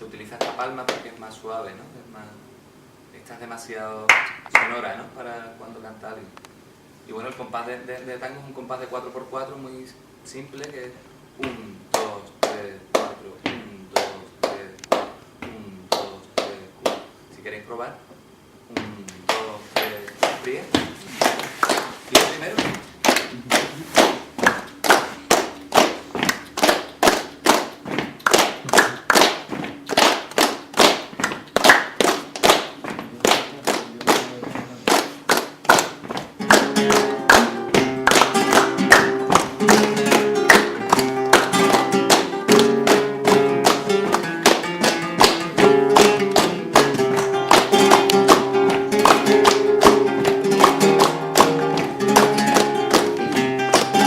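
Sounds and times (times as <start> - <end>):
hands clapping a beat: 0.2 - 1.3, 4.1 - 4.8, 11.4 - 17.1, 18.7 - 54.0
flamenco guitar music: 19.3 - 54.0.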